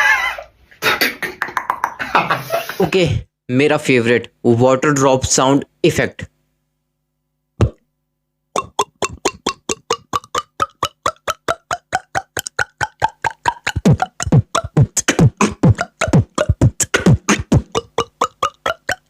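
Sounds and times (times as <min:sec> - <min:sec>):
beatbox water-drop plops: 0:01.1 - 0:02.1, 0:07.6 - 0:07.8, 0:08.5 - 0:19.0.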